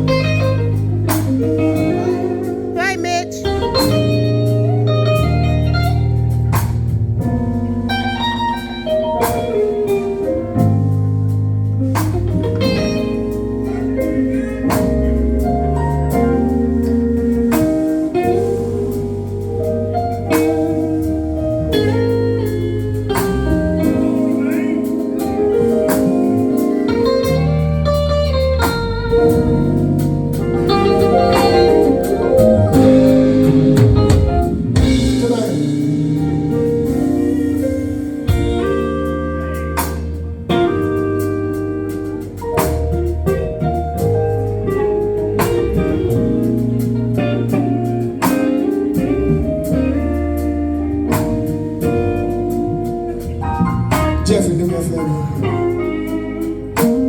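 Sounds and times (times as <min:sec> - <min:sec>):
bass: 0:00.0 - 0:57.0
guitar lines: 0:00.0 - 0:57.0
drum hits: 0:28.6 - 0:39.1.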